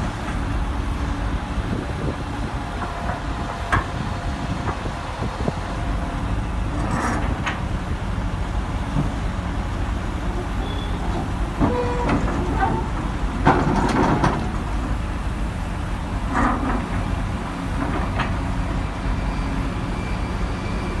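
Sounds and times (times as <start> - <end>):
excavator diesel engine running: 0.0 - 21.0
short squeals: 10.6 - 11.0.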